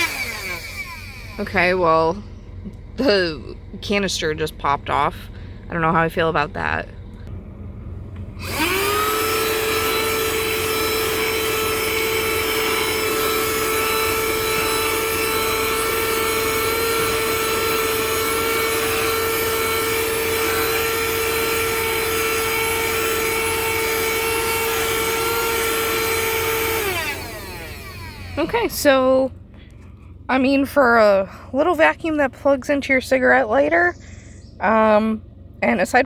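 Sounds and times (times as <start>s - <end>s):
handheld vacuum cleaner whine: 0.0s - 2.8s, 8.2s - 29.1s.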